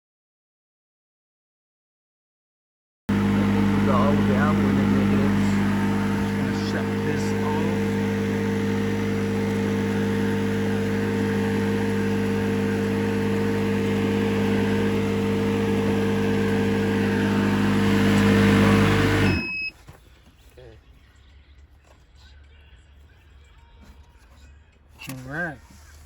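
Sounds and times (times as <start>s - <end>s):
compressor humming: 3.1s - 20.4s.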